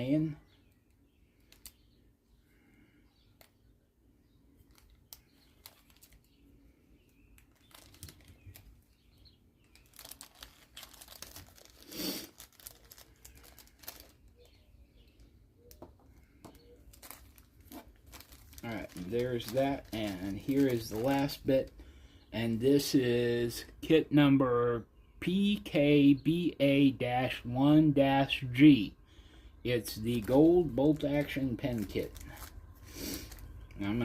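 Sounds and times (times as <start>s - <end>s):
plastic bags crinkling: 4.6s - 15.4s, 16.1s - 21.9s, 29.7s - 34.0s.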